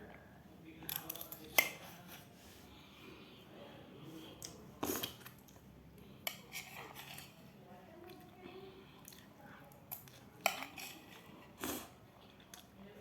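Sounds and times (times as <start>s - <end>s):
cutlery clicking against a plate: 0.9s - 1.8s, 9.9s - 11.0s.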